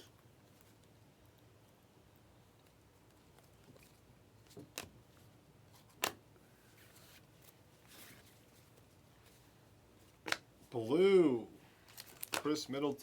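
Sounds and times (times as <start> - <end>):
cards sliding rustles: 11.8 - 12.6.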